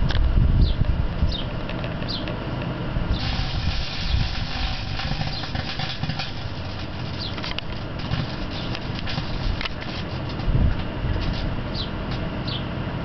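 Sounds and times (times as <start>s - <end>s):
microwave oven humming: 0.0s - 13.0s
foil arcing crackles: 3.1s - 11.7s.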